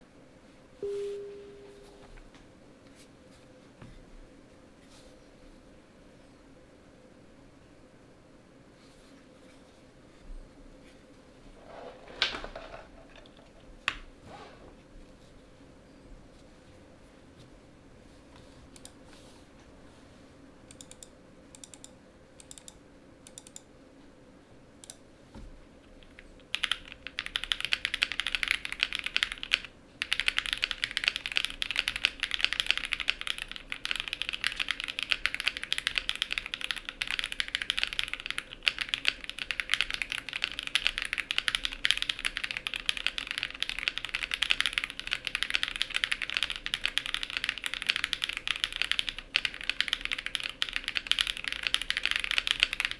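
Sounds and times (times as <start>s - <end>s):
mechanical keyboard typing: 20.7s - 23.7s, 26.0s - 52.9s.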